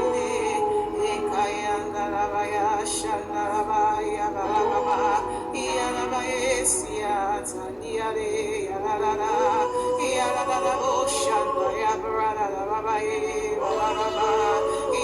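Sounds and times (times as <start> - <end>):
person singing wordless notes: 0.0 - 15.0
sustained instrumental backing: 0.0 - 15.0.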